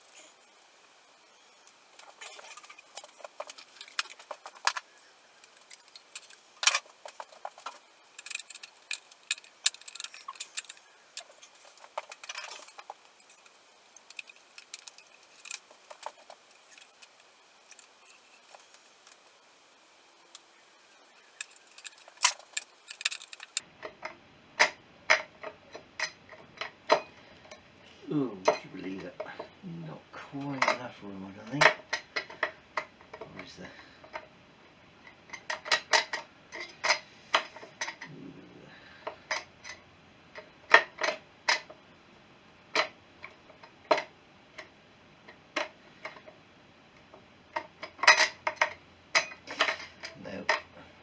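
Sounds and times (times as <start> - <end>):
hand tools clinking on metal: 2.0 - 19.3, 21.2 - 23.6.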